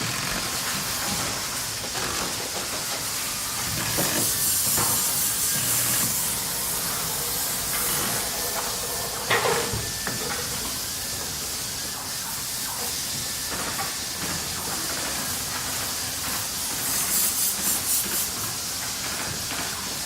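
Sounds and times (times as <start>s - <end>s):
machinery hissing: 0.0s - 20.0s
pulsing hiss: 0.0s - 20.0s.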